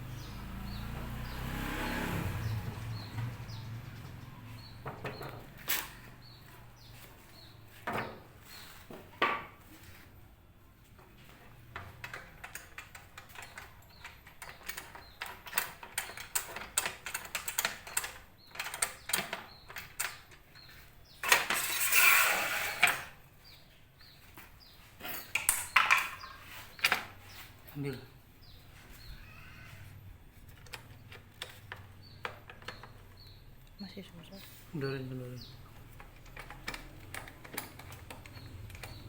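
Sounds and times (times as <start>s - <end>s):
metal tools clinking: 11.8s - 23.2s, 25.0s - 27.6s, 35.7s - 39.0s.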